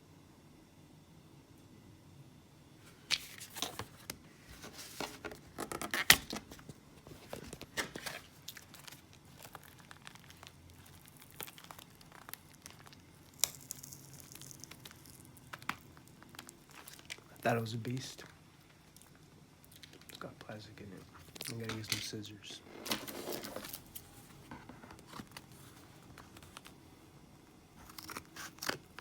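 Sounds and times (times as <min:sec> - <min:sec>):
packaging tearing and crinkling: 0:04.7 - 0:17.4, 0:22.8 - 0:24.2, 0:27.8 - 0:29.0.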